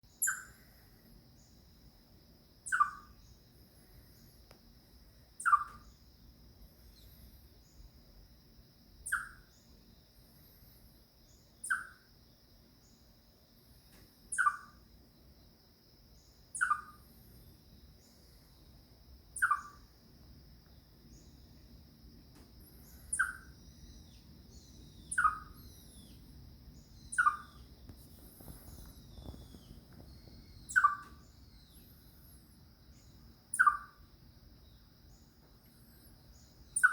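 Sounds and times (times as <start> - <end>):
chipmunk alarm chirps: 0.2 - 0.6, 2.6 - 3.4, 5.4 - 6.0, 9.0 - 9.6, 11.6 - 12.1, 14.3 - 14.8, 16.5 - 17.3, 19.4 - 19.9, 22.9 - 27.7, 28.5 - 34.0, 35.7 - 36.9.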